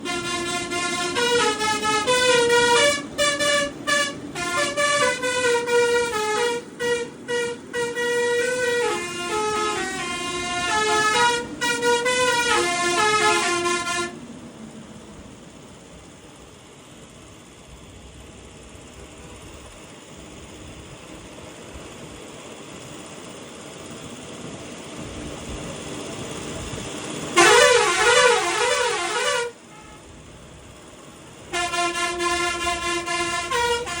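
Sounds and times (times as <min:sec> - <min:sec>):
truck musical horn playing a tune: 0:00.0 - 0:14.2, 0:27.4 - 0:30.1, 0:31.5 - 0:34.0
vehicle noise: 0:00.0 - 0:22.3, 0:23.8 - 0:34.0.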